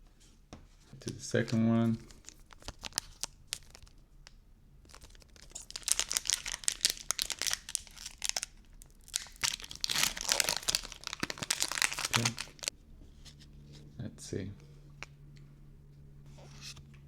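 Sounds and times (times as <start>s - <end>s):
foil wrapper tearing and crinkling: 1.3s - 4.0s, 4.9s - 12.7s.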